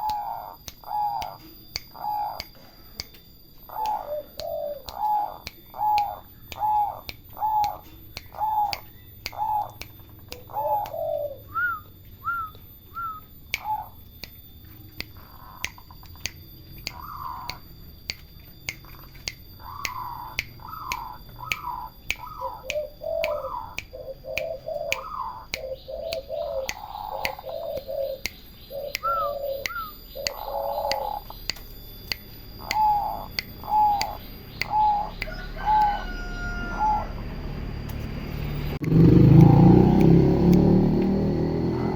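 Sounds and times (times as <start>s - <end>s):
doves cooing: 0.0s - 1.4s, 3.7s - 14.0s, 18.9s - 31.4s, 38.9s - 41.9s
sharp click: 0.0s - 11.1s, 12.4s - 36.0s, 38.8s - 41.7s.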